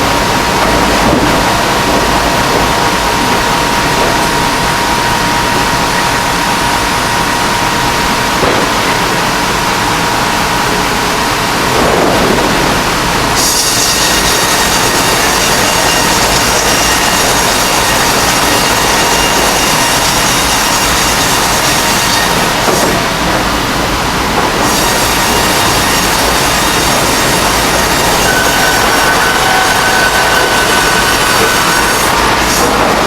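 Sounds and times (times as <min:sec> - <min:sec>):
band blade whine: 0:00.0 - 0:33.0
bandsaw mill running: 0:00.0 - 0:33.0.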